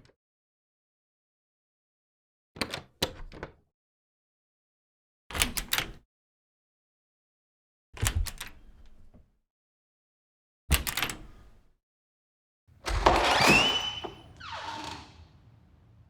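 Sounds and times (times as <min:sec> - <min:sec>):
door latch clunk: 0:12.8 - 0:15.4
squeaky door hinge creak: 0:12.8 - 0:16.0.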